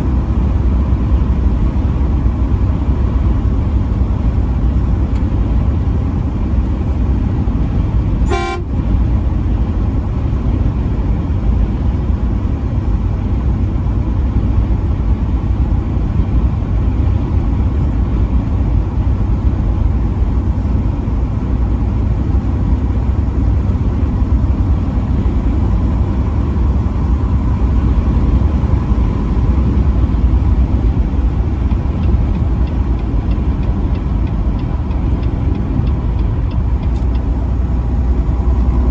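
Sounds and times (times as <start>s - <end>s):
vehicle engine and road rumble: 0.0s - 38.9s
short horn toot: 8.2s - 8.8s.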